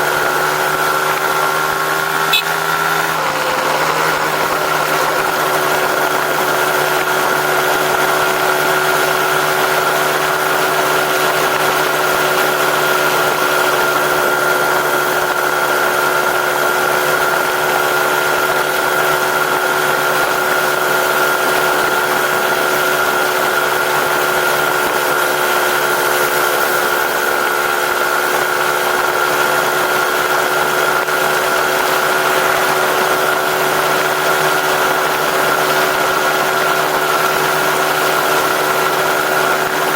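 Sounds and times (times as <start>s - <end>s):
engine idling: 0.0s - 39.9s.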